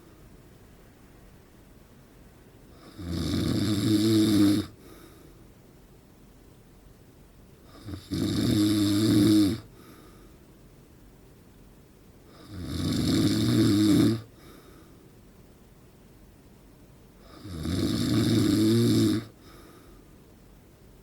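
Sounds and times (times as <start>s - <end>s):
man snoring: 2.8s - 4.8s, 7.7s - 9.7s, 12.3s - 14.3s, 17.2s - 19.4s.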